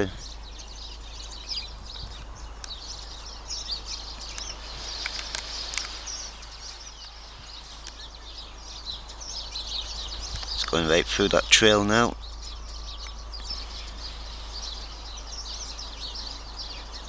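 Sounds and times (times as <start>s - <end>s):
small birds chirping: 0.0s - 17.0s.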